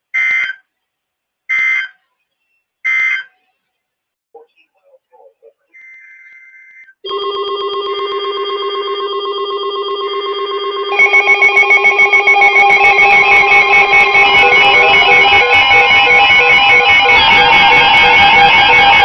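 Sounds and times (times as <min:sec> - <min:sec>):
pulsing electronic alert alarm: 0:07.1 - 0:19.0
warbling data burst: 0:10.9 - 0:19.0.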